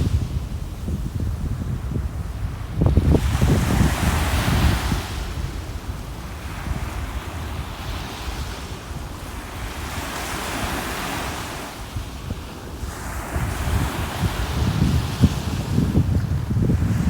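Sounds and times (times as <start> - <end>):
ocean waves washing: 0.0 - 17.0
wind buffeting microphone: 0.0 - 17.0.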